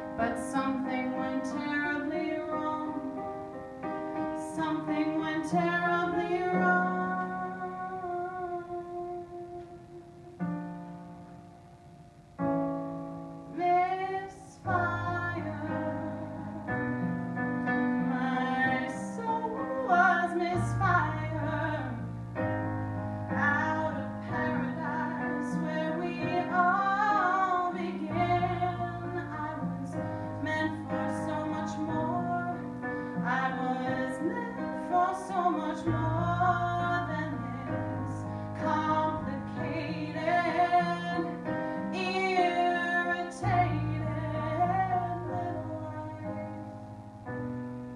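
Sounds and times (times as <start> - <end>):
woman singing: 0.0 - 3.6, 4.2 - 10.6, 13.4 - 22.2, 23.3 - 46.8
keyboard chords: 0.0 - 47.9.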